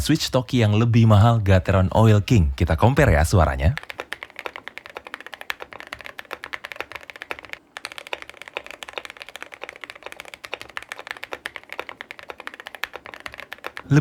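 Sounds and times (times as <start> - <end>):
fast mechanical keyboard typing: 2.6 - 14.0.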